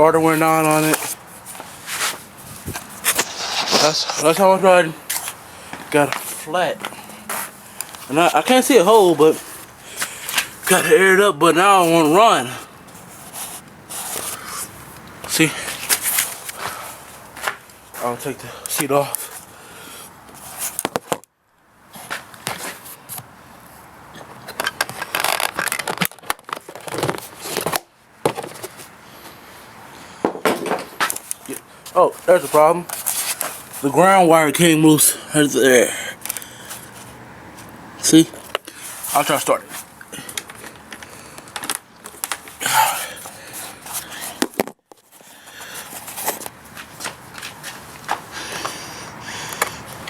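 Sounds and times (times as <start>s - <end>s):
seat scraping and rustling: 0.4s - 11.2s.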